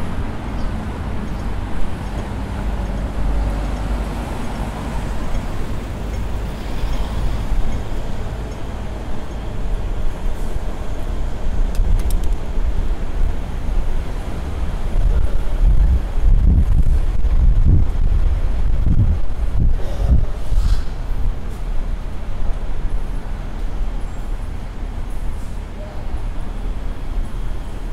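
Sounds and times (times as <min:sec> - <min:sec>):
street traffic rumble: 0:00.0 - 0:27.9
sharp clicks: 0:11.7 - 0:12.4.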